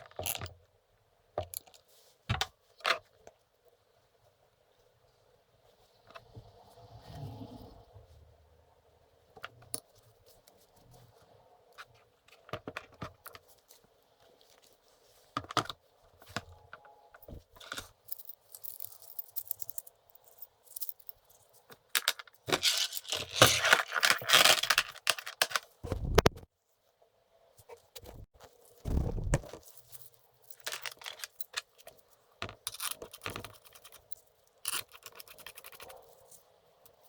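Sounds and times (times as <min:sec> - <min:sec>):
clicks and knocks of parts handled: 0:15.4 - 0:26.4, 0:29.4 - 0:36.0.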